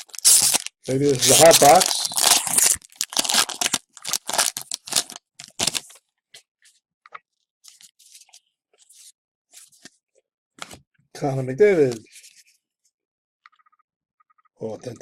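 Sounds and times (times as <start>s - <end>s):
foil pack tearing: 0.0s - 5.8s
cards rustling: 0.0s - 6.0s.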